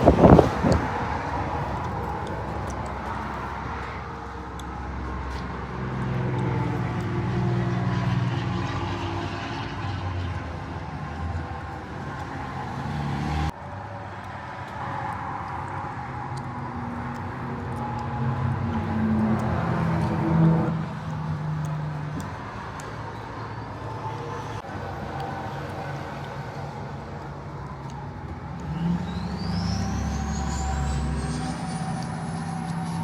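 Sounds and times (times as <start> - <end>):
low vehicle engine hum: 0.0 - 33.0
road noise: 0.0 - 33.0.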